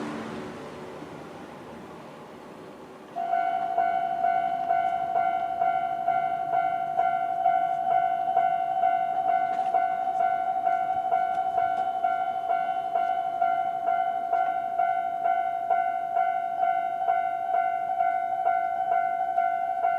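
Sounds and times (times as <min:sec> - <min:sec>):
wash of noise: 0:00.0 - 0:03.0
level crossing bell dinging: 0:03.2 - 0:19.9.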